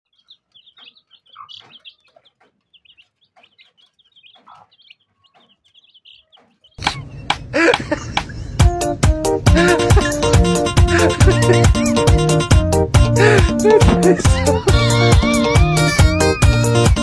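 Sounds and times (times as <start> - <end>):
birds chirping: 0.0 - 17.0
lower clucking bird calls: 0.1 - 8.4
loud music with strong beat: 9.0 - 17.0.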